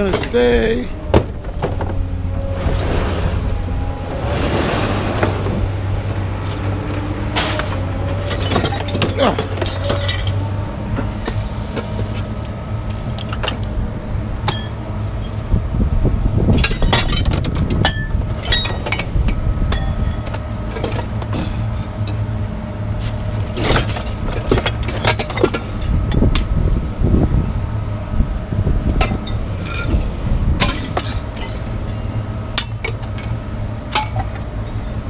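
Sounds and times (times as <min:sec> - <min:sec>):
scrap metal clanking: 0:00.0 - 0:10.5, 0:16.6 - 0:22.2, 0:22.9 - 0:26.0, 0:28.9 - 0:35.0
low engine hum: 0:00.0 - 0:35.0.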